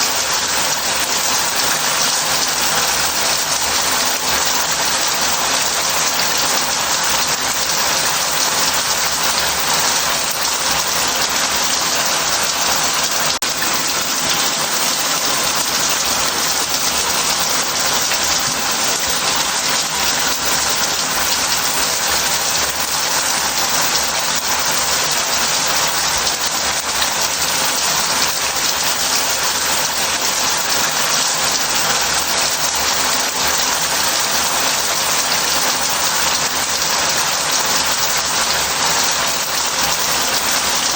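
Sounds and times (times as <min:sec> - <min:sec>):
shower spraying water into bath: 0:00.0 - 0:40.9.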